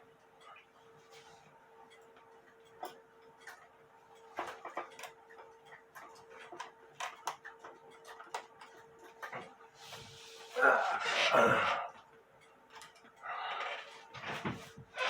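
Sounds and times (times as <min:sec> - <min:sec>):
small metallic clicks and taps: 0:01.9 - 0:09.6.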